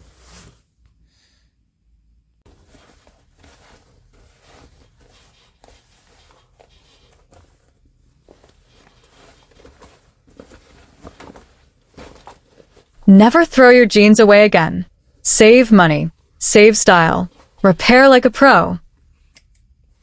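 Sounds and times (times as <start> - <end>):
faint handling rustles: 2.5 - 13.0.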